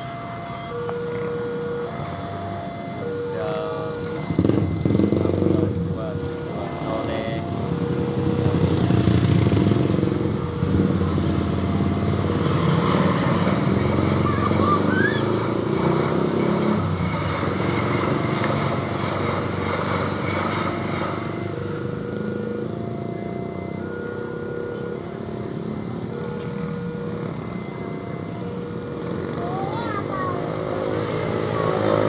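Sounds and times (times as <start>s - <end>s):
vehicle engine rumbling: 0.0s - 32.0s.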